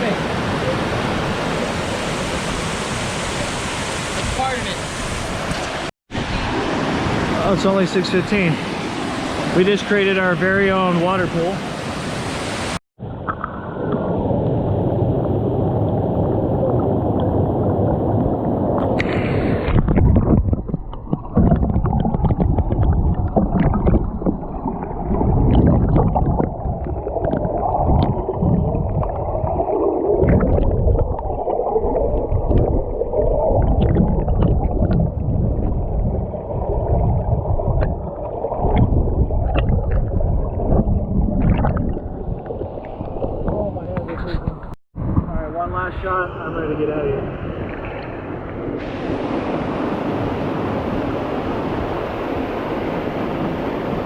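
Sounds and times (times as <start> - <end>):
waterfall rushing and gurgling: 0.0 - 12.8, 48.8 - 54.0
water splashing: 15.1 - 44.2.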